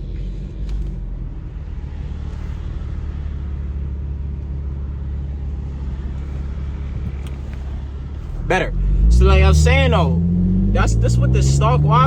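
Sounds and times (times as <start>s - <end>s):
car exhaust droning: 0.0s - 12.0s.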